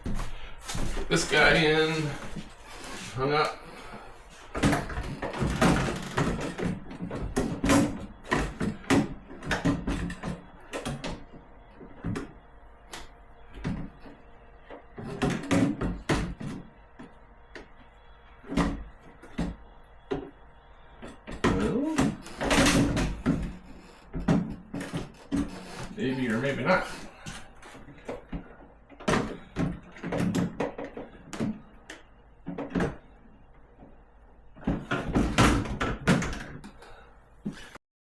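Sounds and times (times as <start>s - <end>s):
ice maker knocks and rattles: 4.5s - 11.4s, 14.7s - 16.7s, 21.0s - 31.7s, 32.4s - 33.2s, 34.6s - 36.8s.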